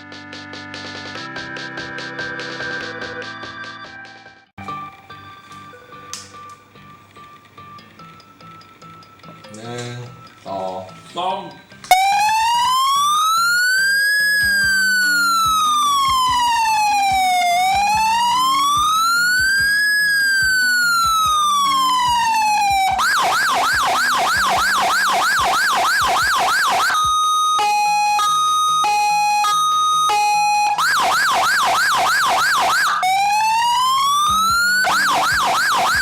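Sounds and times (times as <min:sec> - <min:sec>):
electronic siren wail and yelp: 0:11.9 - 0:36.0.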